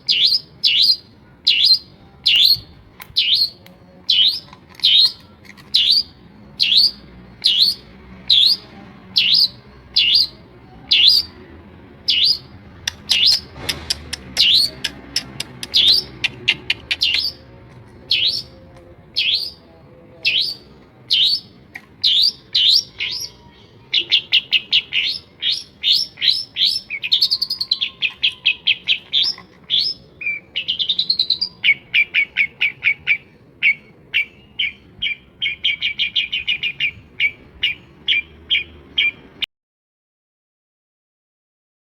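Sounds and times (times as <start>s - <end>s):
shrike singing: 0.0s - 39.5s.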